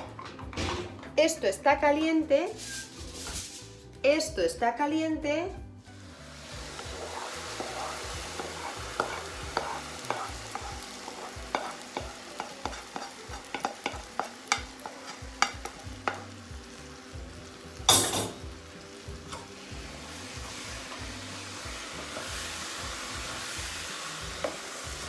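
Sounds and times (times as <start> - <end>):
food sizzling: 0.9 - 4.3, 5.7 - 25.0
spoon tapping a pan: 6.7 - 16.5, 17.8 - 18.5, 24.4 - 24.8.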